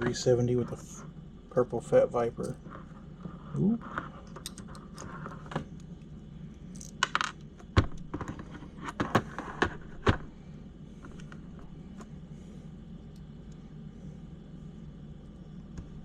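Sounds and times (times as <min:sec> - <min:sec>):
low steady hum: 0:00.0 - 0:16.0
small parts clicking and tapping: 0:04.3 - 0:06.1, 0:06.7 - 0:09.3.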